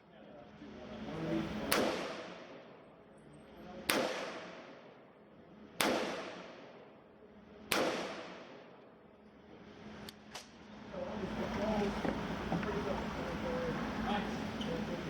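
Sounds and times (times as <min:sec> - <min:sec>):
gunshots with echo: 0:01.6 - 0:02.7, 0:03.8 - 0:04.9, 0:05.8 - 0:06.9, 0:07.7 - 0:08.7.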